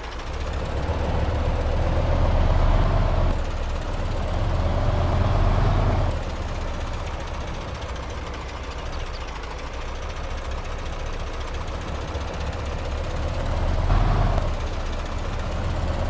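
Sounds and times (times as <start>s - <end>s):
model machine engine rumble: 0.0s - 16.0s.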